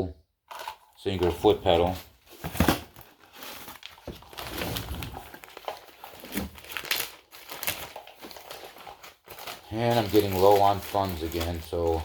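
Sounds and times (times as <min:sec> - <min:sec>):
plastic bag crinkling: 0:00.5 - 0:12.0.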